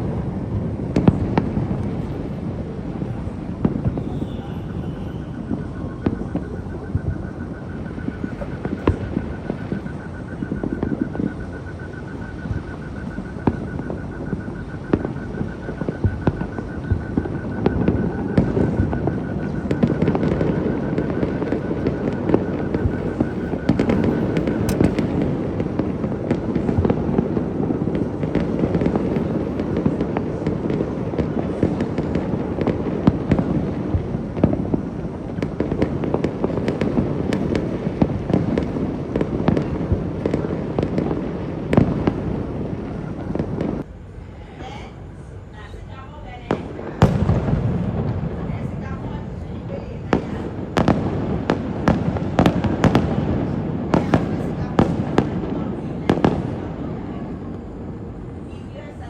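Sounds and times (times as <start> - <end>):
thin steady high tone: 0.0 - 41.6
fireworks bangs and crackles: 0.0 - 59.0.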